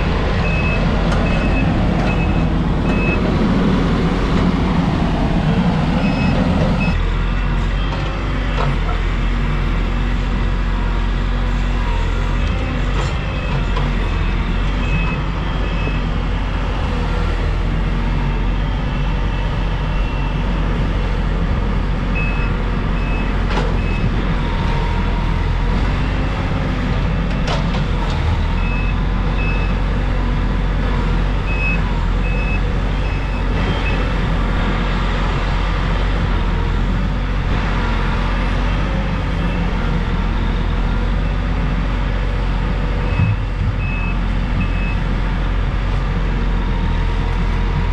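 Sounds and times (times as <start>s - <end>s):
heavy diesel equipment running: 0.0s - 47.9s
back-up alarm beeping: 0.4s - 3.2s.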